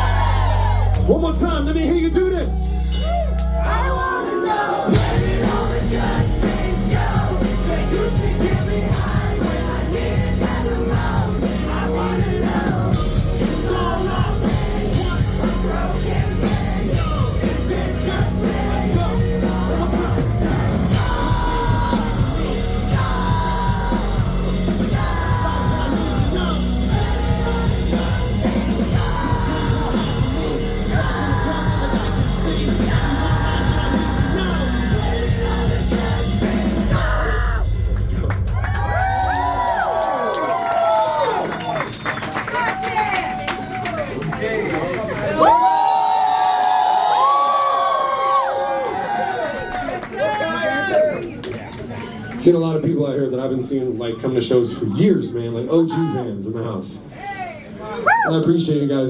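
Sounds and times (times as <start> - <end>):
sung and shouted vocals: 0.0 - 1.1, 2.4 - 41.5
live rock band playing: 0.0 - 38.5
heavy drums: 0.0 - 41.8.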